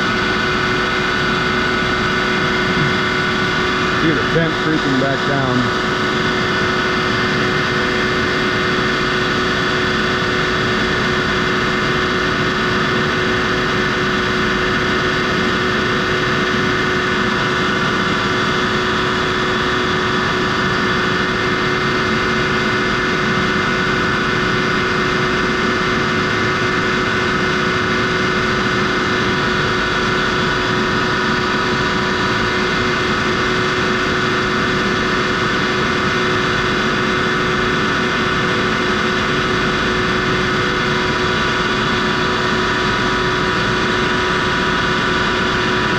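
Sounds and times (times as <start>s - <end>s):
air compressor drone and whine: 0.0s - 45.9s.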